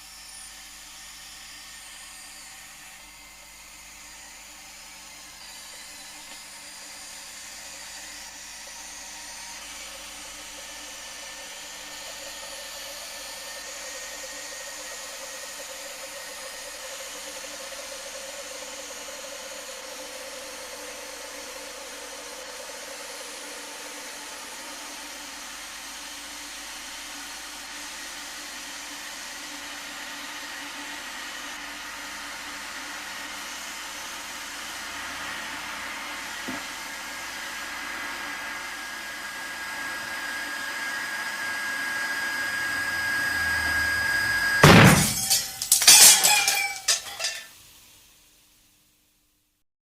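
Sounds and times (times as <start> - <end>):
kettle steam hissing: 31.2 - 44.6.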